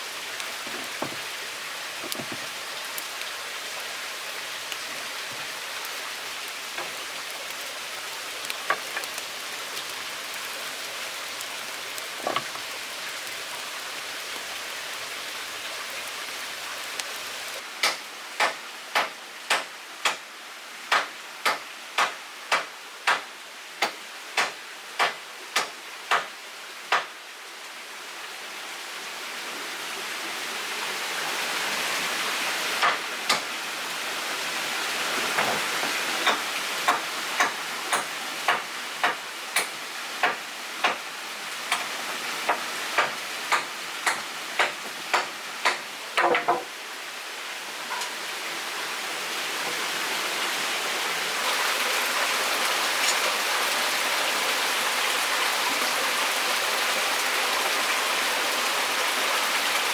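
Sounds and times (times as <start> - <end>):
rushing water: 0.0 - 59.9
sharp knocks: 43.0 - 46.7.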